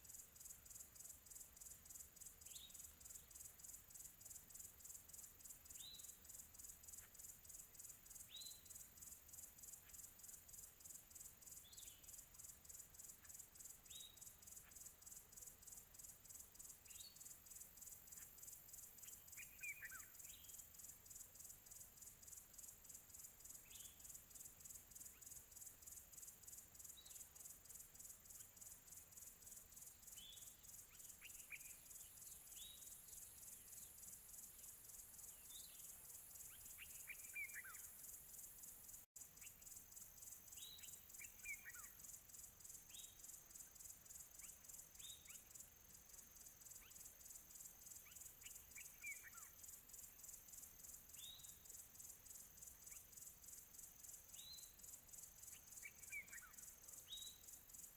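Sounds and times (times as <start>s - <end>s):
bird chirps: 13.1s - 15.1s, 16.6s - 20.9s, 23.4s - 51.8s, 52.6s - 57.8s
insect trilling: 25.0s - 57.8s.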